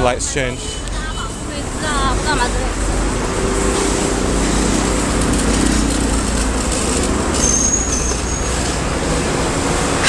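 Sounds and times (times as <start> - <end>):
rumble of passing vehicles: 0.0 - 10.0
high-pitched squeal: 6.7 - 8.8.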